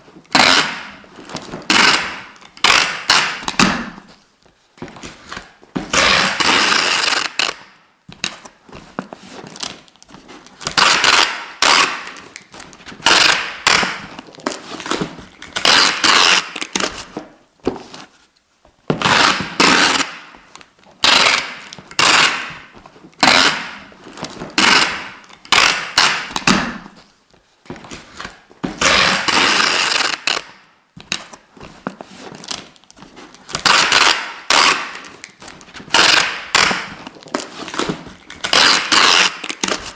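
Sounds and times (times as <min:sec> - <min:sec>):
adhesive tape ripping off roll: 0:00.3 - 0:01.0, 0:01.6 - 0:04.0, 0:05.9 - 0:08.4, 0:10.6 - 0:17.1, 0:19.0 - 0:20.3, 0:21.0 - 0:23.9, 0:24.5 - 0:26.9, 0:28.3 - 0:31.3, 0:33.4 - 0:39.9.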